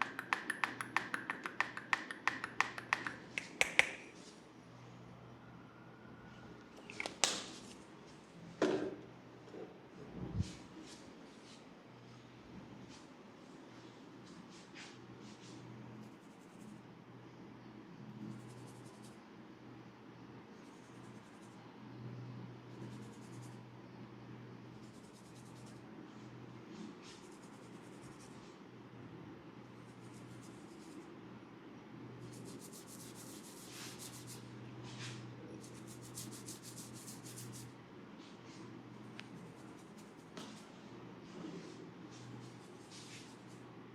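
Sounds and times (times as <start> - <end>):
fingertips scratching hair: 0.0 - 4.1, 32.2 - 37.7, 39.1 - 40.7.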